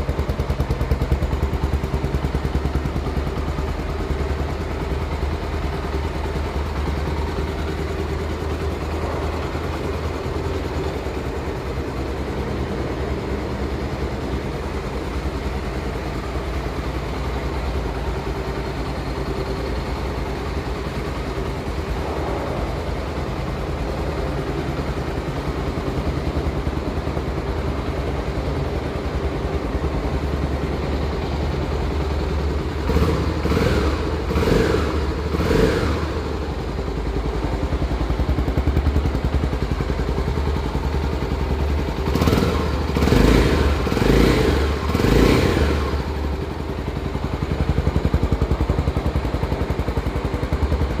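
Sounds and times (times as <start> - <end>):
motorcycle engine idling: 0.0 - 51.0
engine revving: 32.8 - 36.4, 42.0 - 46.3.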